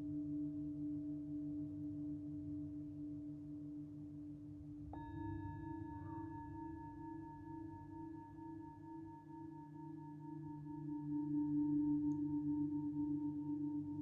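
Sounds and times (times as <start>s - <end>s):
singing bowl ringing: 4.9s - 14.0s.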